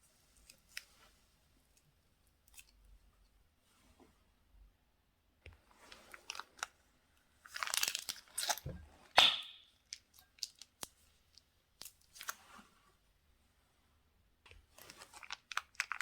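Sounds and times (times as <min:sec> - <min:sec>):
sharp slime pop: 0:08.6 - 0:09.7.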